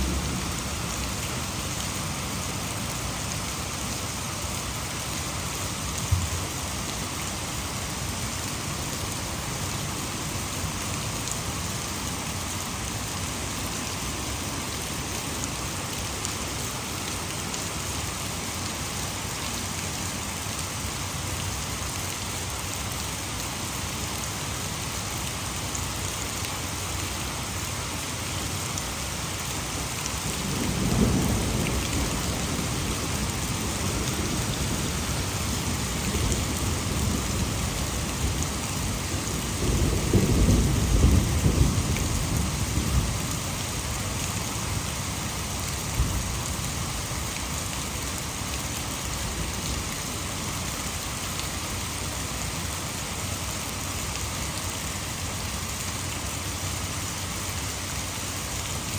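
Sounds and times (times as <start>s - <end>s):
low thunder rumble: 0.0s - 2.2s, 30.2s - 43.5s
heavy rain pouring: 0.0s - 58.9s
water rushing over a dam: 0.0s - 58.9s.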